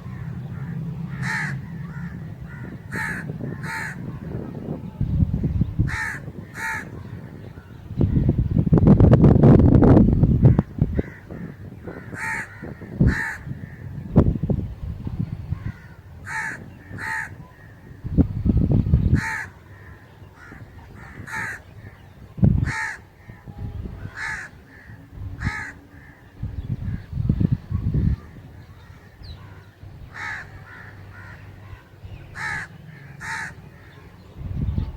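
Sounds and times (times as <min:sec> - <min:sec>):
low rumbling noise: 0:00.0 - 0:34.9
crow cawing: 0:00.1 - 0:04.1, 0:05.9 - 0:07.3, 0:11.0 - 0:13.8, 0:15.6 - 0:17.8, 0:19.2 - 0:22.0, 0:22.6 - 0:23.3, 0:24.1 - 0:26.2, 0:28.2 - 0:31.8, 0:32.4 - 0:33.6.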